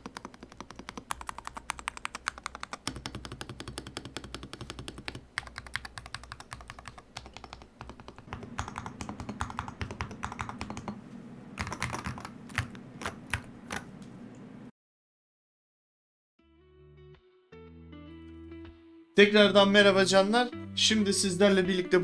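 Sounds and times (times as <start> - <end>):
keyboard typing: 0.0 - 11.0, 11.6 - 14.0.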